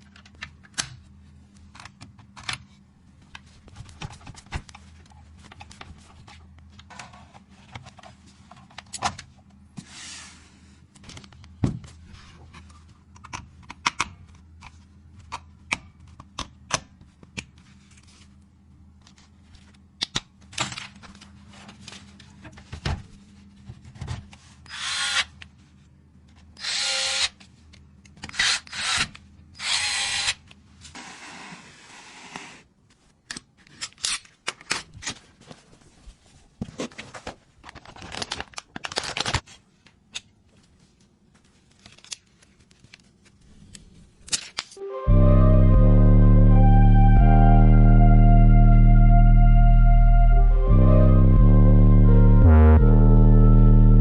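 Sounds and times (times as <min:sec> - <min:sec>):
electric screwdriver whirring: 0:24.7 - 0:25.3, 0:28.3 - 0:30.4.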